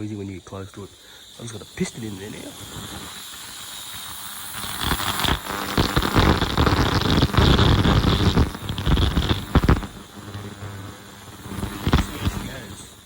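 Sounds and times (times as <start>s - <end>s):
ultrasonic cleaner crackling hiss: 0.0s - 13.0s.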